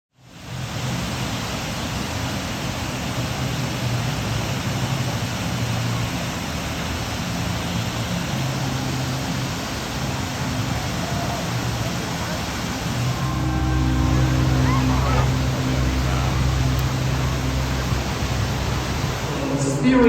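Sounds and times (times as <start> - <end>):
steady rushing noise: 0.3 - 20.0
faint low hum: 13.0 - 19.8.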